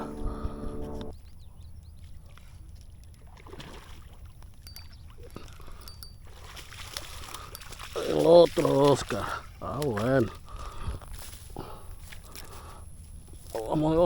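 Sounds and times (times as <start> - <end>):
low steady rumble: 0.0 - 3.4.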